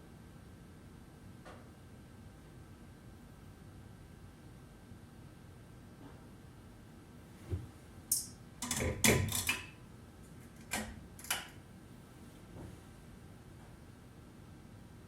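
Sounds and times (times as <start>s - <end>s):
sharp clicks and knocks: 8.1s - 9.8s, 10.4s - 11.6s.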